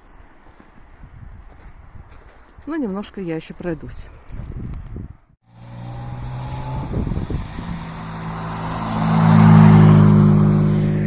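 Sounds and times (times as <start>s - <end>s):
rally car engine passing: 5.5s - 11.0s.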